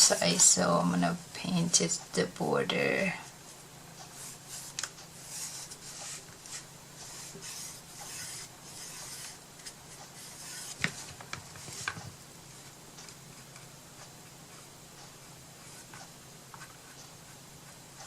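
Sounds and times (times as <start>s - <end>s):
paintbrush swishing on wood: 4.1s - 9.4s, 10.1s - 10.8s.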